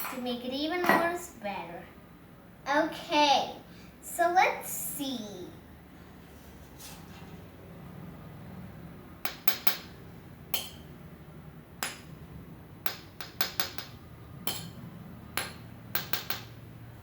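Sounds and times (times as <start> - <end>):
toy utensils tapping and clinking: 15.4 - 16.6.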